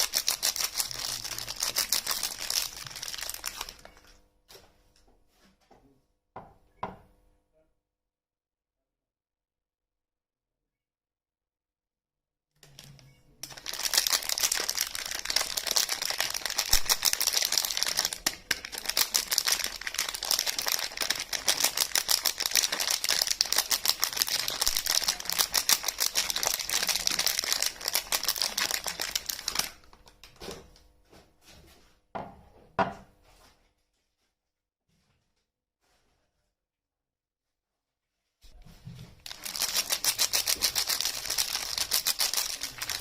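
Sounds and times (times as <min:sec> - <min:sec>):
wrapping crinkling and crackling: 0:00.0 - 0:04.2, 0:12.6 - 0:30.4, 0:39.1 - 0:43.0.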